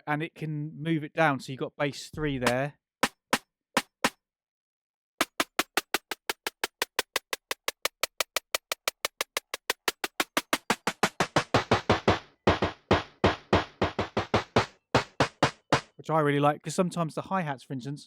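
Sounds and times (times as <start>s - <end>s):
repeating drum hits: 2.2s - 4.2s, 5.2s - 16.0s.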